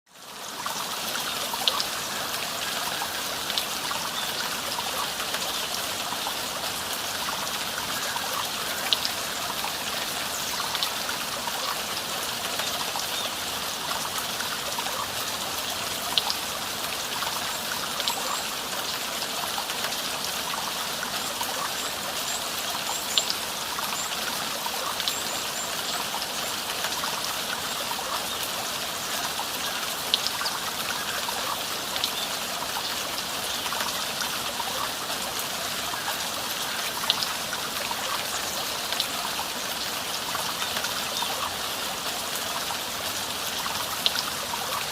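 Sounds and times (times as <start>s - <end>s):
stream flowing: 0.1s - 44.9s.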